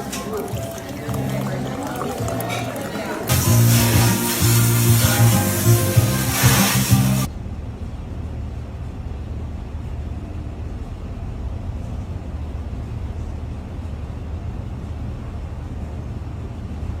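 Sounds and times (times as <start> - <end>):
faint hiss: 0.0 - 7.3.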